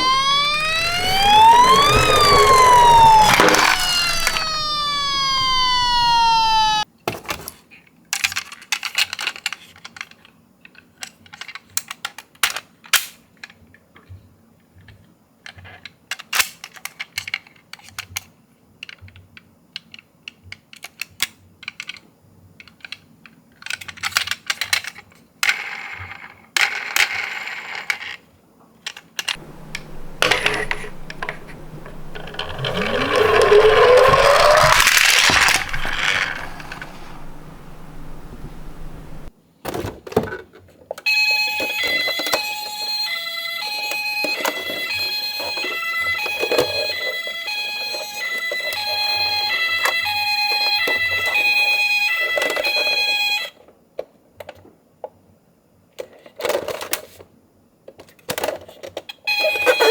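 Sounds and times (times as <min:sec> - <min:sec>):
rising whine: 0:00.0 - 0:06.8, 0:29.4 - 0:39.3
small plastic parts clicking: 0:29.4 - 0:39.2.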